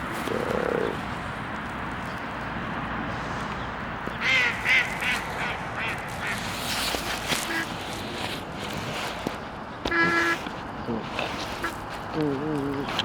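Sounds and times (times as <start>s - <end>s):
duck quacking: 4.2s - 6.4s, 9.9s - 10.4s.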